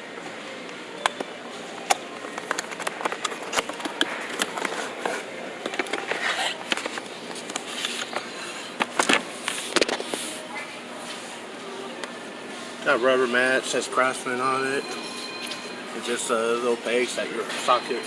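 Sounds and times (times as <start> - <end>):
steady background hum: 0.0 - 18.0
plastic packaging clicks and crinkles: 1.0 - 10.2.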